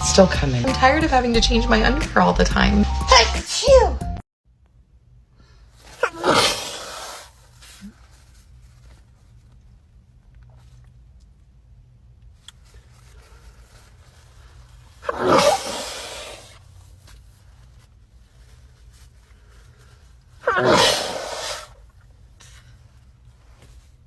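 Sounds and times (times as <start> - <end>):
faint low hum: 4.5 - 15.2
person sneezing: 5.9 - 8.1, 15.0 - 16.6, 20.4 - 21.8.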